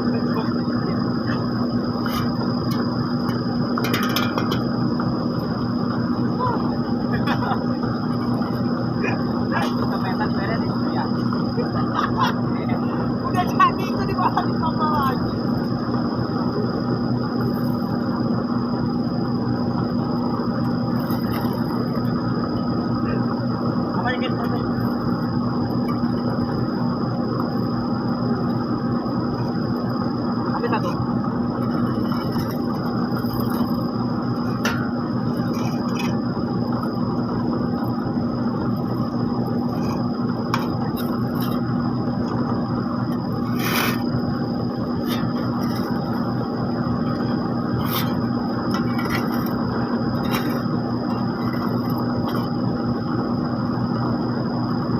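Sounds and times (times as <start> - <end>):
diesel engine hum: 0.0 - 54.9
high steady whine: 0.0 - 54.9
short clicks and scrapes: 43.5 - 44.1.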